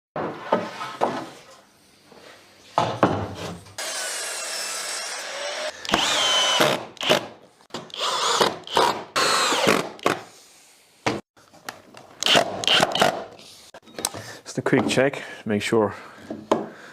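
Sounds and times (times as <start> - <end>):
woodworking tools cutting wood: 3.8 - 10.3.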